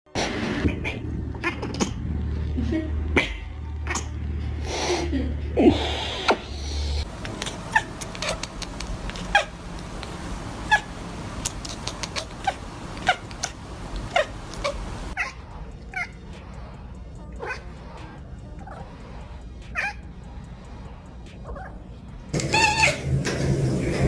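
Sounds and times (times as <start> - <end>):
cat meowing: 17.4 - 17.7.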